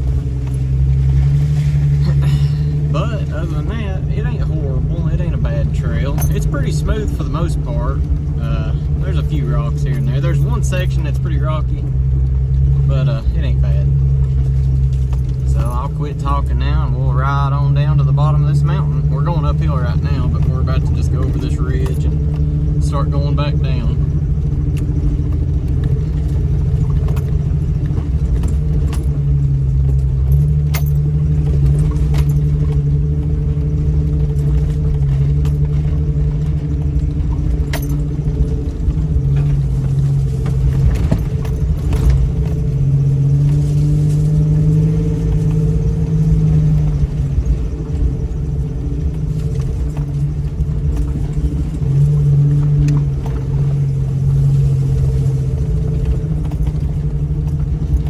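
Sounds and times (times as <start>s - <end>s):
off-road vehicle engine running: 0.0s - 58.0s
clicks and rattles: 23.6s - 54.0s.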